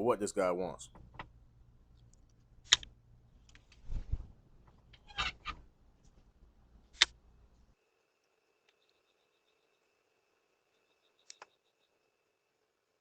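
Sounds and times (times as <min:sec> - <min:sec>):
sharp clicks: 0:02.0 - 0:03.8.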